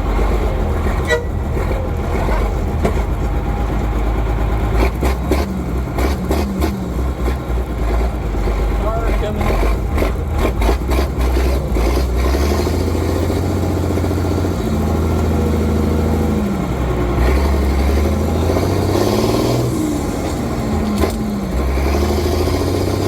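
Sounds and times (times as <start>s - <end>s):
diesel truck engine running: 0.0s - 23.0s.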